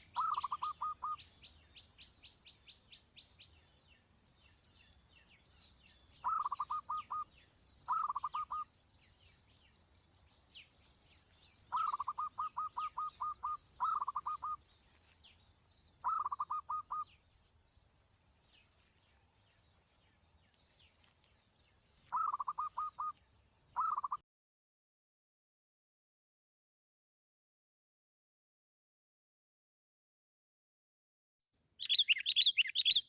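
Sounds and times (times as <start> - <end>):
bird calling in fast bursts: 0.0 - 1.3, 6.2 - 8.7, 11.7 - 14.6, 16.0 - 17.2, 22.1 - 23.2, 23.8 - 24.2, 31.8 - 33.0
faint high chirps: 31.8 - 33.0.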